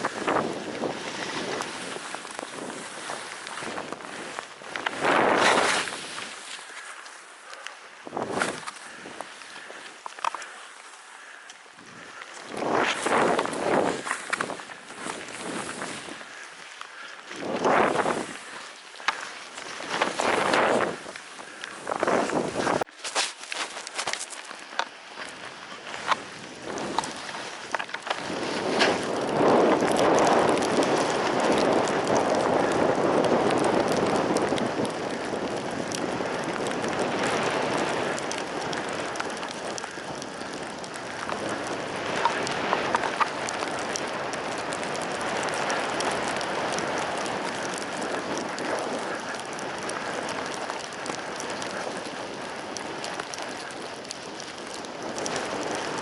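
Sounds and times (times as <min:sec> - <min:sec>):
skis hissing over snow: 0:00.0 - 0:34.8.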